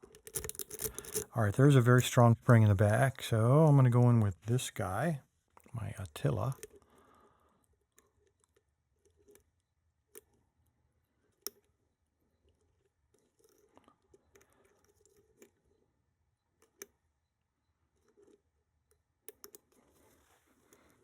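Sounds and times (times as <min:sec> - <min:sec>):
lock pick scraping and clicking: 0:00.0 - 0:01.4.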